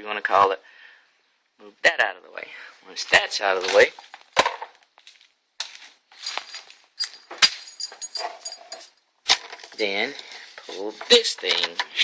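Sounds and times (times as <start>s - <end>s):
plastic parts clicking and rattling: 6.2s - 12.0s
light metallic clinks: 6.3s - 9.0s.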